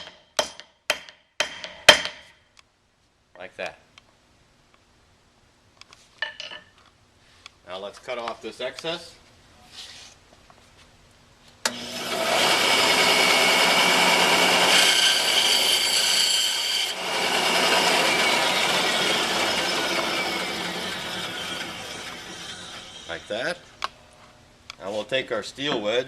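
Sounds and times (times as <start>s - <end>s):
power saw cutting wood: 11.7s - 23.5s.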